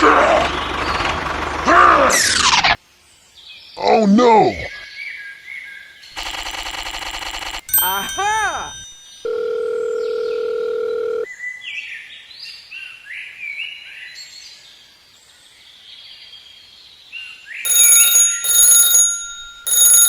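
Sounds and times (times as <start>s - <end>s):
alarm-like ringing bursts: 17.7s - 20.0s.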